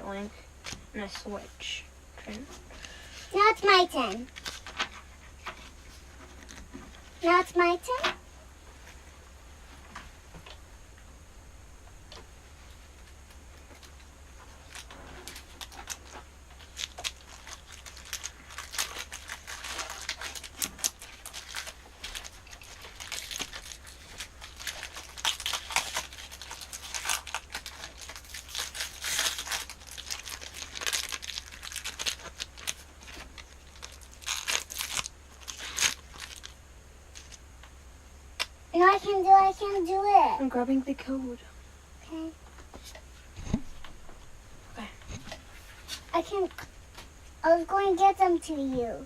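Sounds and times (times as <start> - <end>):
foil wrapper crinkling and tearing: 2.8 - 5.1, 13.6 - 37.4.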